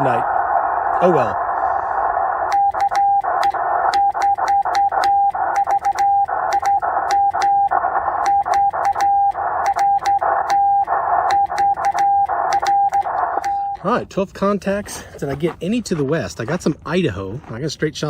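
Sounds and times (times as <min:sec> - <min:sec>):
hissing radio noise: 0:00.0 - 0:17.6
morse code beeps: 0:02.4 - 0:13.9
sharp switching clicks: 0:08.2 - 0:10.6.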